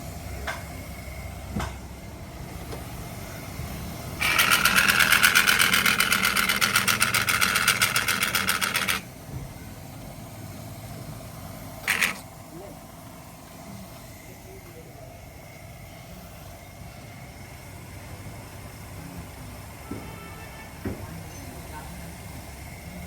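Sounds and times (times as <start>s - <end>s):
power tool rattling: 4.2s - 9.1s, 11.8s - 12.3s.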